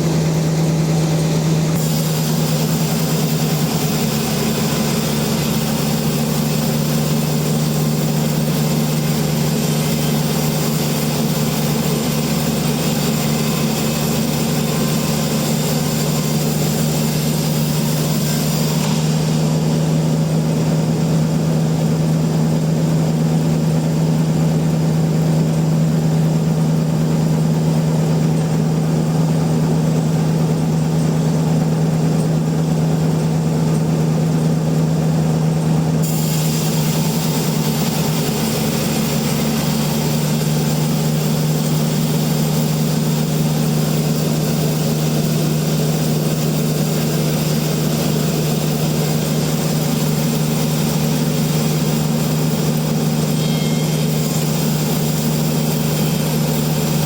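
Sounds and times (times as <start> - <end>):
sawmill machinery humming: 0.0 - 57.0
high hiss: 1.8 - 19.9, 36.0 - 45.2, 45.8 - 57.0.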